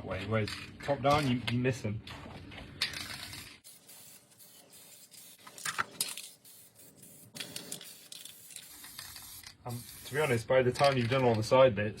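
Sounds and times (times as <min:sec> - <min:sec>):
spray paint can hissing: 0:03.0 - 0:10.4.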